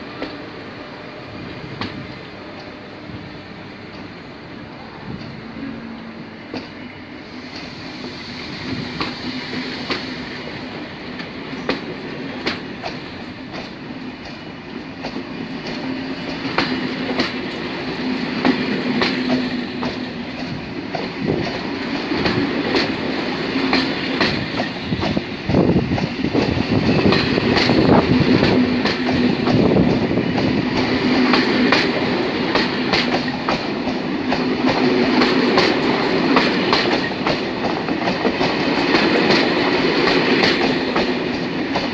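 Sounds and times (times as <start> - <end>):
train hum and rumble: 0.0 - 41.9
train wheels clicking over rail joints: 1.7 - 2.8, 6.5 - 41.9.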